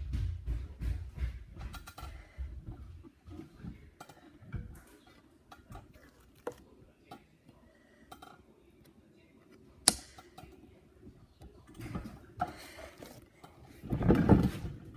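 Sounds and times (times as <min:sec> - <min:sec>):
slime squishing and rustling: 0:03.0 - 0:07.1.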